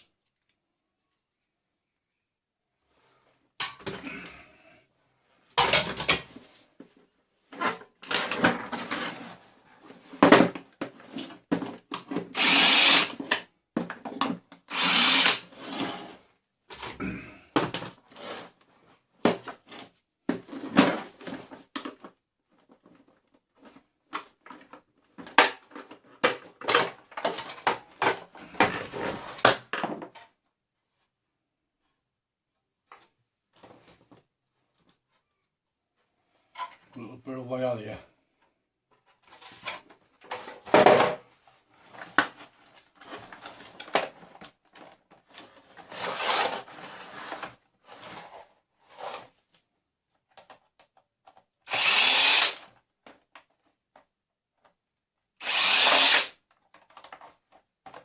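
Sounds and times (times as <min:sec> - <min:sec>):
power drill running: 0:12.4 - 0:13.2, 0:14.7 - 0:15.4, 0:51.7 - 0:52.6, 0:55.4 - 0:56.3.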